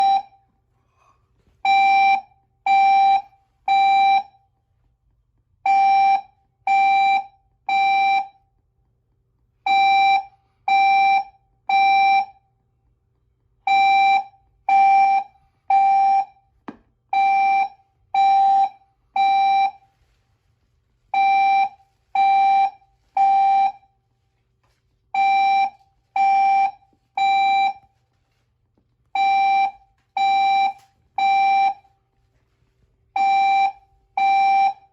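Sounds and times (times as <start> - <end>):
fire alarm horn blasts: 0.0 - 0.5, 1.6 - 4.5, 5.6 - 8.4, 9.7 - 12.4, 13.7 - 16.5, 17.1 - 20.1, 21.1 - 24.0, 25.1 - 28.0, 29.2 - 32.1, 33.2 - 34.9.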